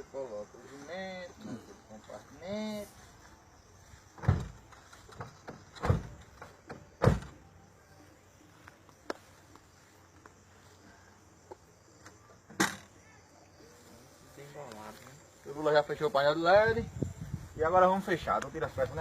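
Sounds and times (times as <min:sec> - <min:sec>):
heavy thumps: 0:04.2 - 0:07.4.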